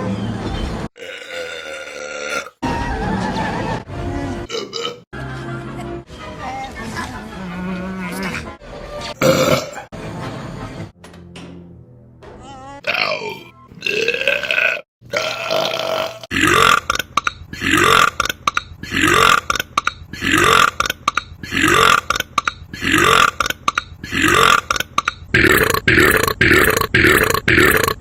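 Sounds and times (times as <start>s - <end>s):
loud belches: 1.0s - 2.6s, 9.2s - 9.8s, 12.9s - 28.0s.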